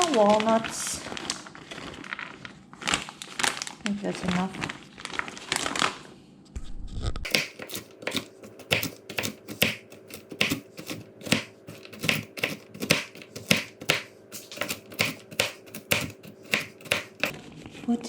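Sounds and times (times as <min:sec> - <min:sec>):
knife chopping on cutting board: 0:07.3 - 0:17.3.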